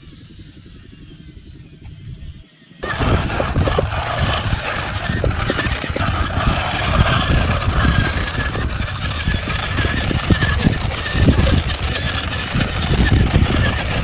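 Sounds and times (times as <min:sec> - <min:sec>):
low rumbling and knocks: 0:02.8 - 0:14.0
model truck motor whine: 0:02.8 - 0:14.0.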